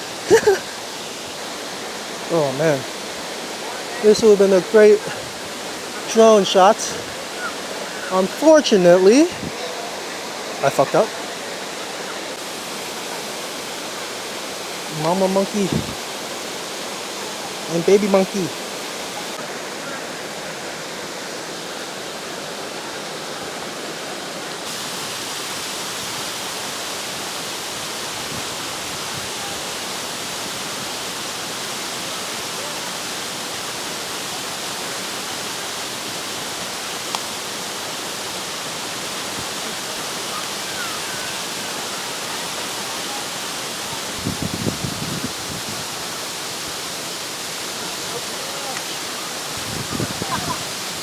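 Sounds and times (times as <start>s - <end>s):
waterfall rushing: 0.0s - 51.0s.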